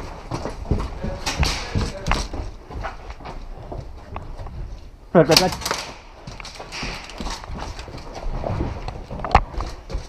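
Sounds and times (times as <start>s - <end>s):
irregular knocks and thuds: 0.0s - 5.0s.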